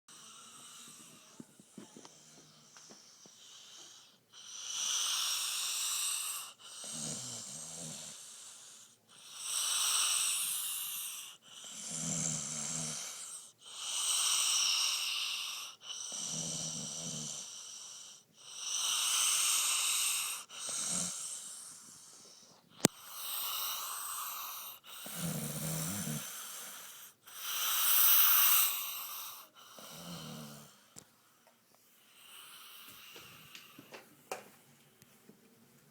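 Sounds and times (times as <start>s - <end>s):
man snoring: 0.1s - 1.4s, 4.4s - 21.8s, 22.9s - 30.9s.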